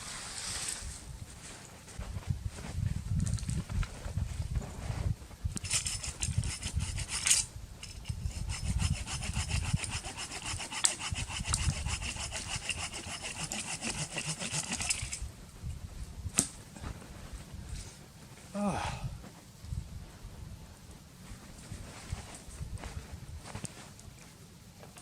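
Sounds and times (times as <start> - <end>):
hand saw cutting wood: 5.6 - 15.2.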